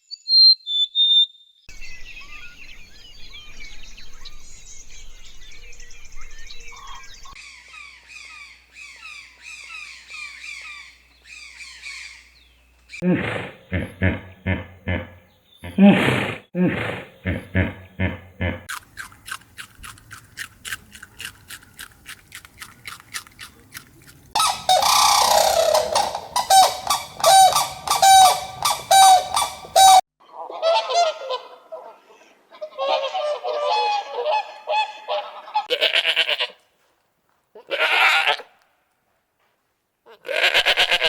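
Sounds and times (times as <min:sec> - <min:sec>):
chattering animal calls: 0:22.6 - 0:30.0
loud repeated animal calls: 0:24.4 - 0:30.0.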